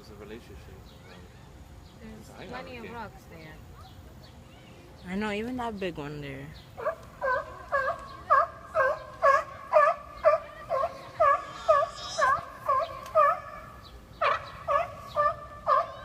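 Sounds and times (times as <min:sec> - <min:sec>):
seal pup calling: 0:06.8 - 0:16.0.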